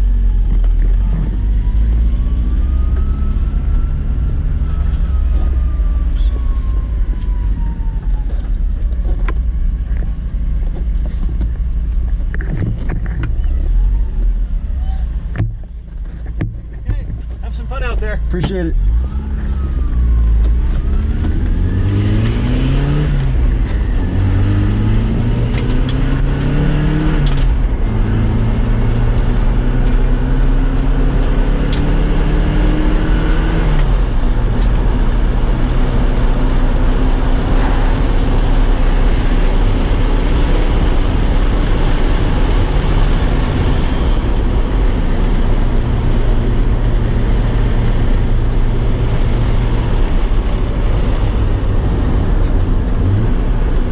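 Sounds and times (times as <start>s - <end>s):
car engine accelerating through gears: 0.0s - 15.4s, 17.5s - 53.9s.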